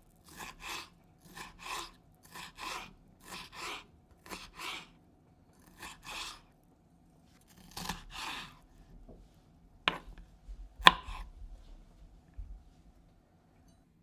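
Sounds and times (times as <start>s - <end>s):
knife slicing peppers: 0.0s - 5.0s, 5.6s - 6.5s, 7.5s - 8.7s, 9.9s - 11.4s
knife knocking on cutting board: 9.9s - 11.6s.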